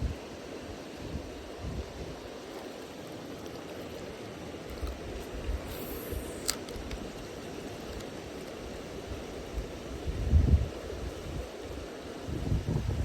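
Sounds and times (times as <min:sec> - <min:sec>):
wind buffeting microphone: 0:08.7 - 0:11.6, 0:12.2 - 0:13.0.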